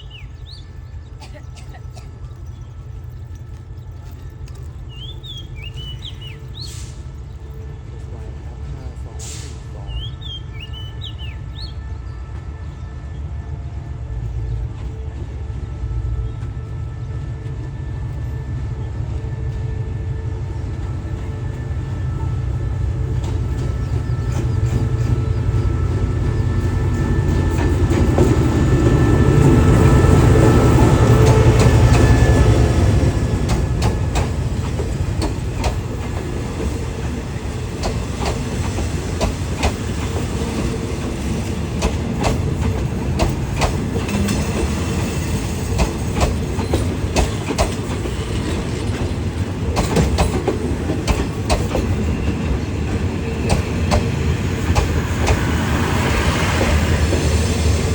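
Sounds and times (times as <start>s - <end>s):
diesel locomotive drone: 0.0s - 57.9s
train wheels clicking over rail joints: 22.4s - 57.9s.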